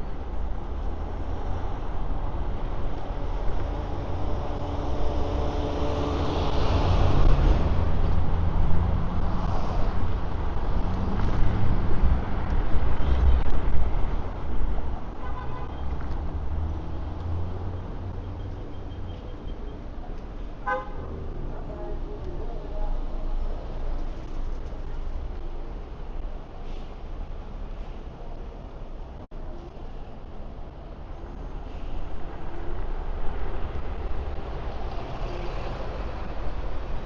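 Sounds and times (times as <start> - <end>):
road and traffic noise: 0.0 - 37.0
vehicles passing: 0.0 - 37.0
vehicle horn: 15.2 - 15.8, 20.6 - 21.1.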